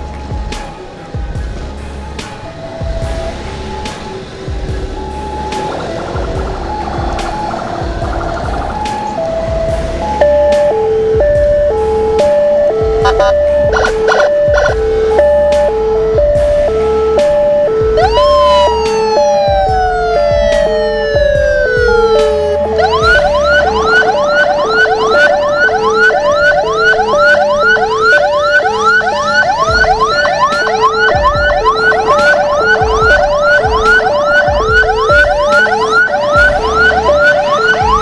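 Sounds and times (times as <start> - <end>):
siren sweep and yelp: 0.0 - 38.0
two-tone siren wail: 0.0 - 38.0.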